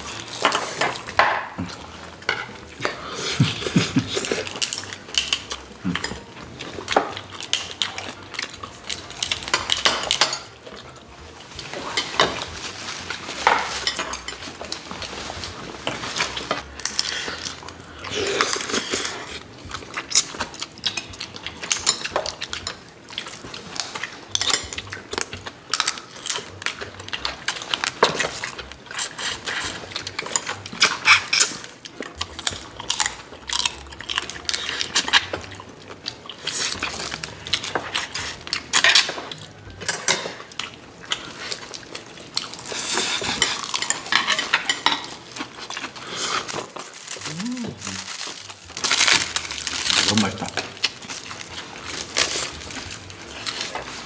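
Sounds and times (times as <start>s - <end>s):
utensils clinking on dishes: 0.0s - 54.0s
chewing and sucking smacks: 45.2s - 53.8s.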